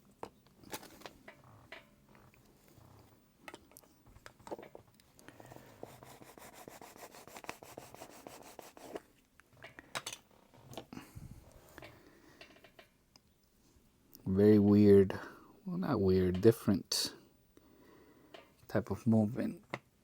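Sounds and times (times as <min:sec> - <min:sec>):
fingers rubbing rubber ring: 0:05.7 - 0:09.0.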